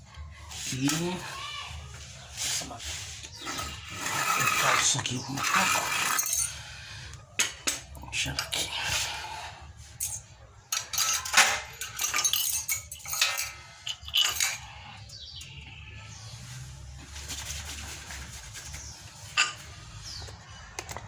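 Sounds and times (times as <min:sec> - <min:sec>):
metal tools clinking and clattering: 0:03.3 - 0:06.8, 0:07.4 - 0:09.1, 0:09.9 - 0:15.6, 0:19.2 - 0:20.2.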